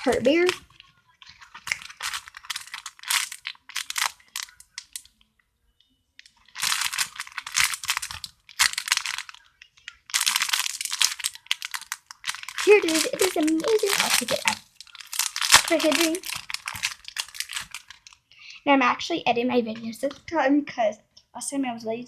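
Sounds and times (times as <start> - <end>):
plastic packaging crinkling: 0.0 - 5.2, 6.2 - 18.3.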